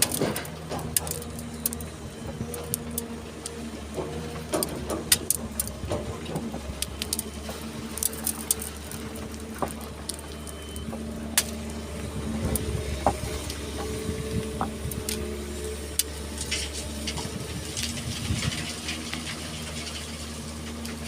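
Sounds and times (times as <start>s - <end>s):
stones and sand rattling: 0.0s - 11.7s, 16.0s - 21.0s
excavator diesel engine running: 0.0s - 21.0s.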